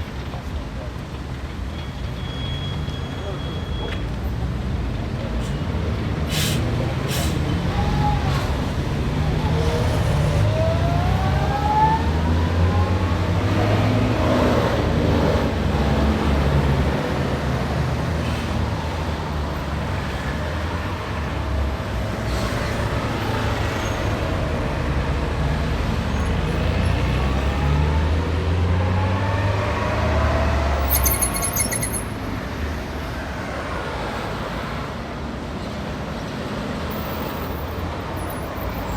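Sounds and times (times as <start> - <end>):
street traffic rumble: 0.0 - 38.9
vehicle engines revving away: 26.3 - 32.1.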